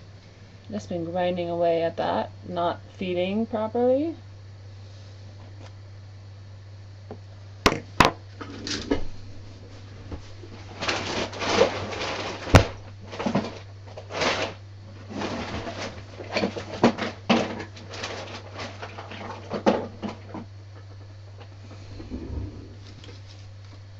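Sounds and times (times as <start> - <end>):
steady low hum: 0.0 - 23.9
scraping and rustling: 8.4 - 20.5, 21.7 - 23.8.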